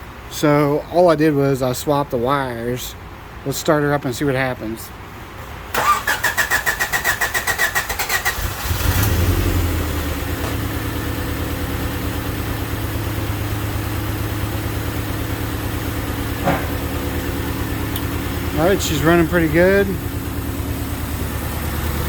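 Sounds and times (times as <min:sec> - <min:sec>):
car engine starting and idling: 0:05.3 - 0:22.0.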